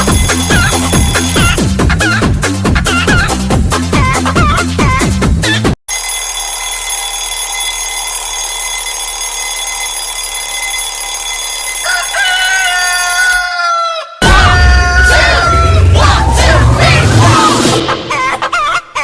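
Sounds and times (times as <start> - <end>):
rooster crowing: 11.7 - 16.6.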